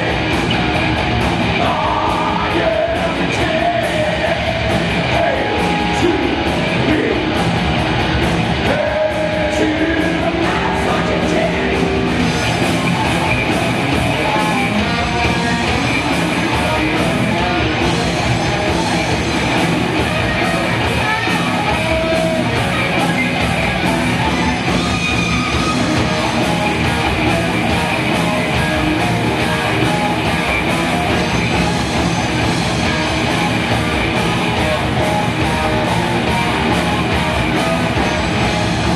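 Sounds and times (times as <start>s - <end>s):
heavy metal band playing: 0.0s - 38.9s.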